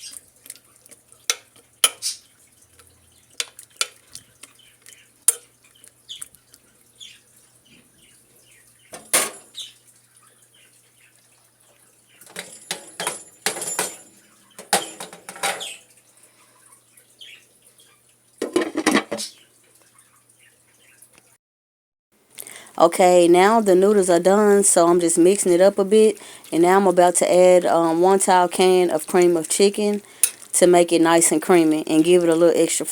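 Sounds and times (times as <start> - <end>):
utensils clinking against pots: 1.3 - 2.2, 8.9 - 9.6, 12.2 - 15.8, 18.4 - 19.3, 24.8 - 32.4.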